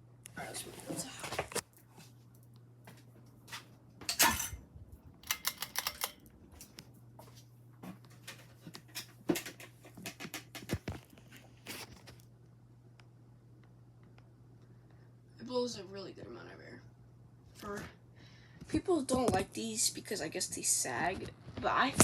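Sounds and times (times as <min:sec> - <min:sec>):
ceiling fan motor hum: 0:00.0 - 0:22.0
object being handled clicks: 0:05.2 - 0:06.2.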